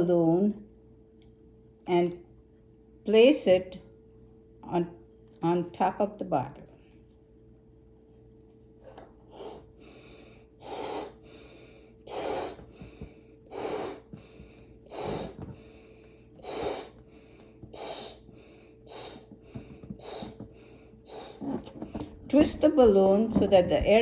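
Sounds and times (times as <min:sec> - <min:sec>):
strong puffs of breath: 0:09.3 - 0:15.8, 0:16.4 - 0:17.0, 0:17.7 - 0:19.3.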